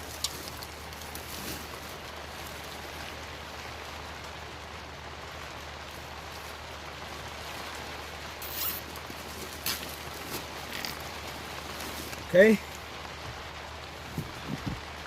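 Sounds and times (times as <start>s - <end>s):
steady hiss: 0.0s - 15.0s
zip tie rasp: 8.4s - 8.9s.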